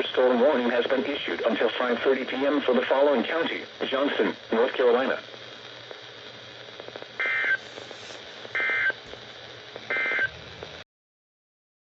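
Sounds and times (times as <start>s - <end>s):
radio hiss with faint crackle: 0.0s - 10.8s
warbling two-tone data bursts: 9.9s - 10.4s.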